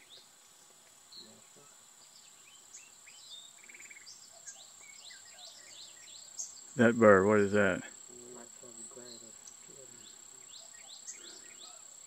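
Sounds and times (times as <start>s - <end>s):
high-pitched insect drone: 1.1s - 12.0s
bird chirps and calls: 2.0s - 6.8s, 8.8s - 11.9s
rapid bird trill: 2.0s - 7.9s, 8.7s - 12.0s.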